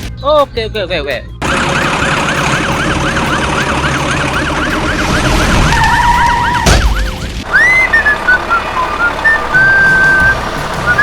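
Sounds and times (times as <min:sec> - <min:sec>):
siren yelping: 0:01.4 - 0:10.3
rising-and-falling whistle: 0:03.8 - 0:11.0
crash-like hit: 0:04.9 - 0:07.5.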